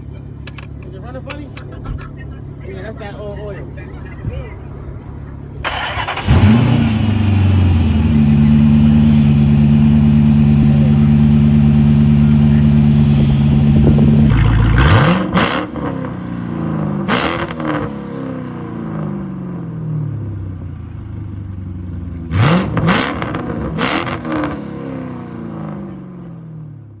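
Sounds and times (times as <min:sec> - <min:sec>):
car engine revving: 0:05.6 - 0:19.2, 0:22.3 - 0:25.0.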